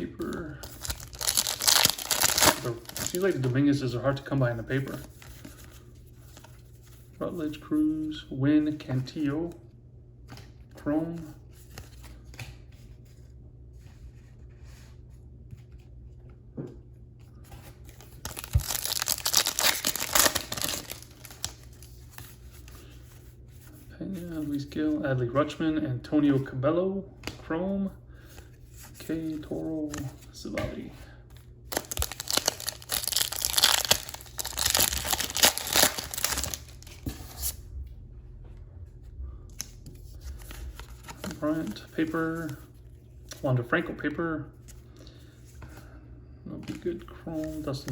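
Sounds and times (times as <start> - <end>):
handling of cards: 0.0 - 7.4, 15.5 - 23.0, 28.2 - 37.6, 39.5 - 43.6
wrapper tearing with crinkling rip: 0.6 - 3.5, 18.2 - 21.9, 31.7 - 37.5.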